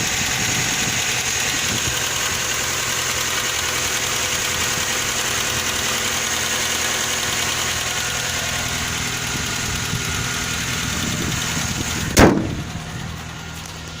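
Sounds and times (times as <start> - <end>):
car engine idling with knock: 0.0 - 14.0
loud thump: 12.0 - 12.8.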